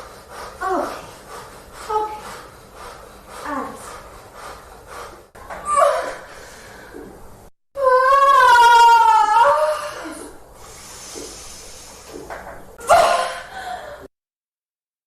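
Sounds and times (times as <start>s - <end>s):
woman gasping and breathing hard: 12.8s - 14.1s.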